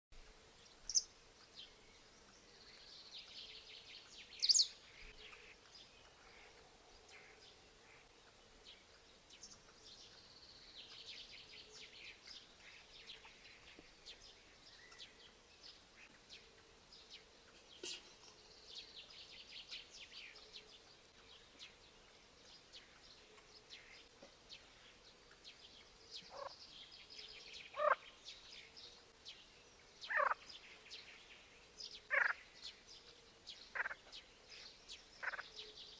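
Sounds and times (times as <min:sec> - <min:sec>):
faint background hiss: 0:00.2 - 0:35.9
birds chirping and trilling: 0:00.5 - 0:35.9
low sweeping bird calls: 0:25.8 - 0:30.9, 0:31.9 - 0:35.9.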